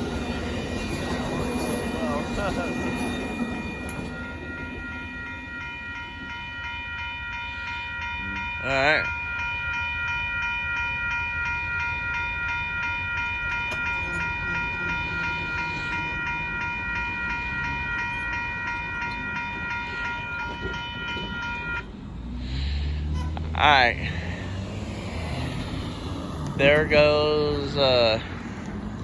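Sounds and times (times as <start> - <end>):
crossing warning bell ringing: 0.0 - 29.0
low train rumble: 0.0 - 29.0
vehicle engine rumble: 13.4 - 29.0.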